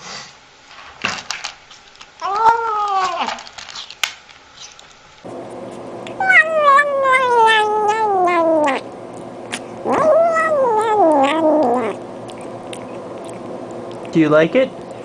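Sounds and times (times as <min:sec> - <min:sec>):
cat meowing: 0:02.2 - 0:03.4, 0:06.1 - 0:08.8, 0:09.5 - 0:13.4.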